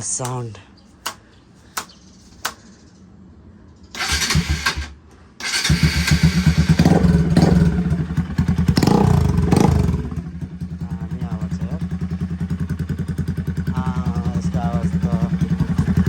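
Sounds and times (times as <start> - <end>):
motorcycle engine revving loud: 4.0 - 16.0.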